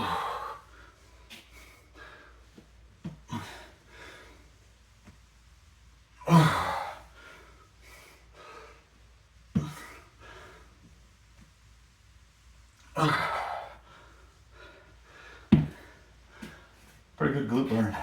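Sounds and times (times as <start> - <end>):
man breathing hard: 0.0 - 4.7, 6.3 - 9.0, 9.6 - 10.8, 13.0 - 17.1.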